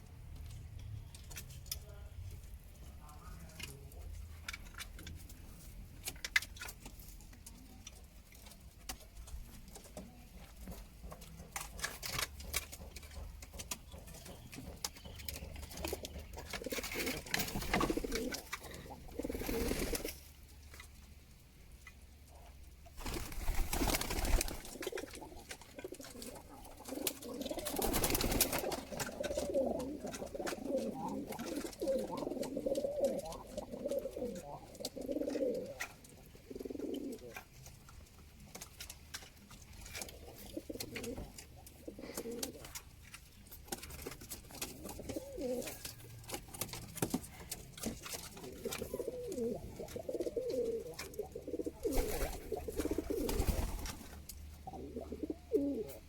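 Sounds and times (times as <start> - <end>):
pigeons cooing: 12.4 - 20.2, 23.0 - 37.4, 39.9 - 42.8, 44.6 - 46.3, 47.5 - 53.9, 54.6 - 56.0.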